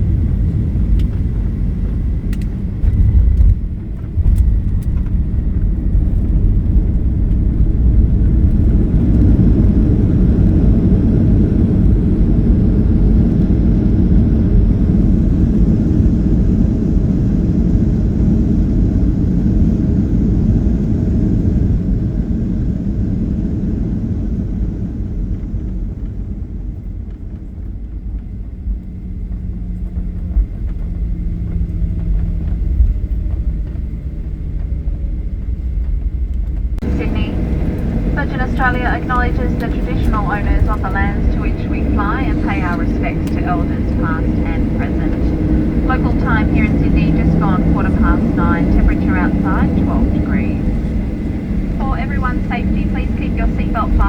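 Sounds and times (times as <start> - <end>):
airliner cabin roar: 0.0 - 54.0
airliner cabin jolts: 36.8 - 50.6.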